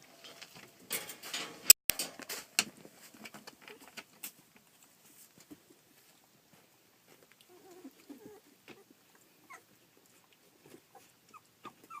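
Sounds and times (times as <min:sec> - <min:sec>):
puppies calling: 0:07.4 - 0:12.0
puppy squeak: 0:11.3 - 0:12.0.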